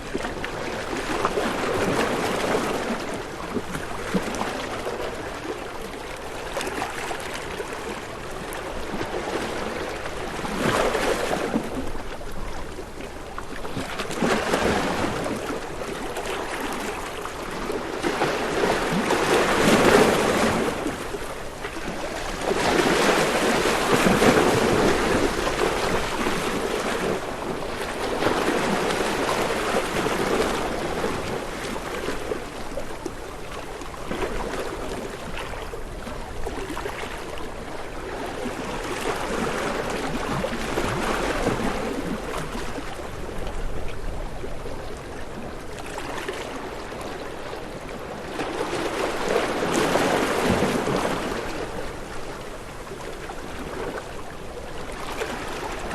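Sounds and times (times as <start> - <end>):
ocean waves breaking: 0.0 - 55.9.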